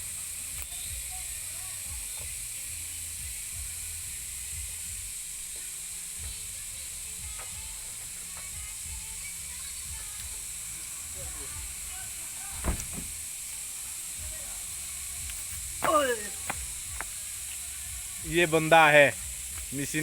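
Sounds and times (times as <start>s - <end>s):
constant high hiss: 0.0s - 20.0s
diesel engine rumbling: 6.2s - 20.0s.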